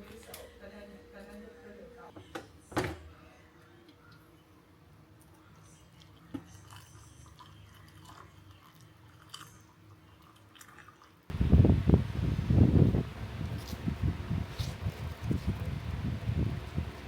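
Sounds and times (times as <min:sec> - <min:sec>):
low room hum: 0:11.3 - 0:17.0.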